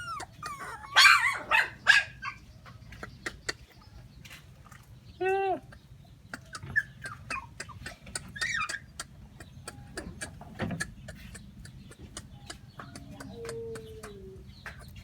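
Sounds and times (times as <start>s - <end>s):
sharp clicks and ticks: 7.6s - 14.9s.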